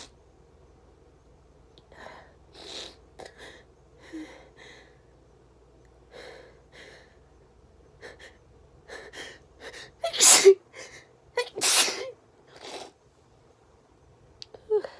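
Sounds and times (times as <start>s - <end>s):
person sneezing: 10.1s - 10.6s, 11.4s - 12.9s.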